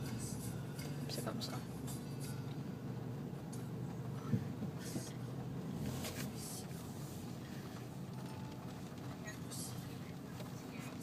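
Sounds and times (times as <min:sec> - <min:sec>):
car noise: 0:00.0 - 0:11.0
rain on a car: 0:04.2 - 0:11.0.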